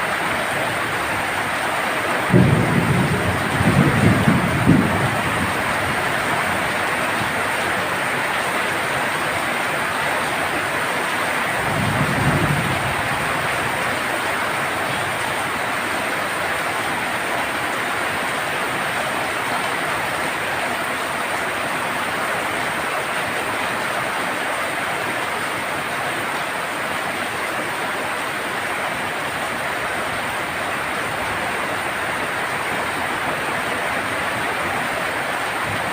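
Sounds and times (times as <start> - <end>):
heavy rain on a tin roof: 0.0 - 35.9
low rumble of thunder: 2.3 - 7.4, 11.6 - 13.9.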